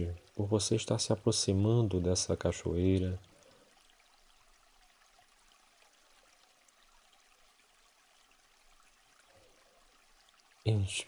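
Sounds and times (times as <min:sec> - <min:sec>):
man speaking: 0:00.0 - 0:03.2, 0:10.7 - 0:11.0.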